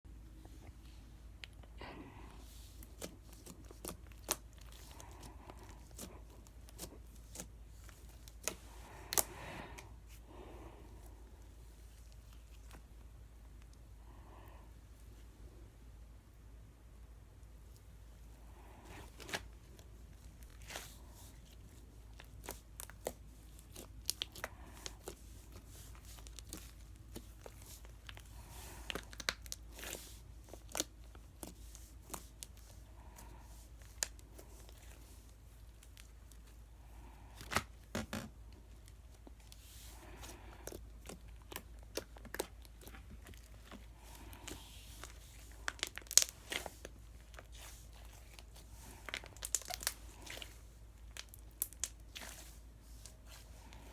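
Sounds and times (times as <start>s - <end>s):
slime crackling and popping: 2.8s - 9.3s, 20.4s - 33.1s, 40.0s - 52.6s.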